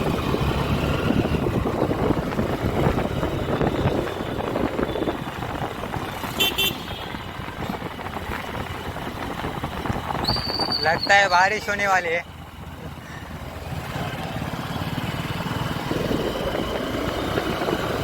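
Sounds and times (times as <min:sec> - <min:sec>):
wind noise on microphone: 0:00.0 - 0:11.2, 0:15.7 - 0:18.0
motorcycle engine: 0:00.0 - 0:18.0
vehicle horn double toot: 0:06.3 - 0:07.2.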